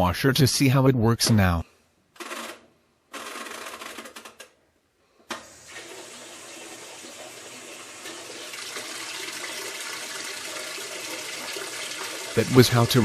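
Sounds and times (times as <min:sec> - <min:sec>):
water rushing into washing machine: 0:05.3 - 0:13.0.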